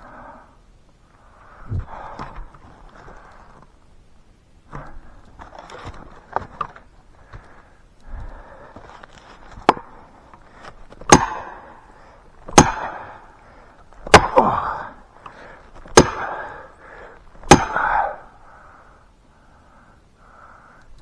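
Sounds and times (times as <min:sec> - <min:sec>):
wedges struck with metallic ring: 0:11.1 - 0:11.6, 0:12.6 - 0:13.0, 0:16.0 - 0:16.3, 0:17.5 - 0:17.8.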